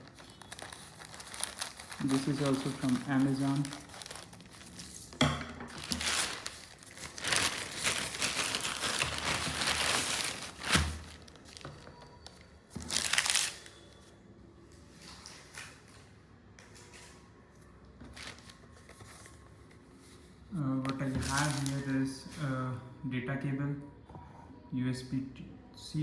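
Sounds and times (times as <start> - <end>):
packaging crinkling: 0.0 - 13.8, 18.1 - 19.3, 21.2 - 21.9.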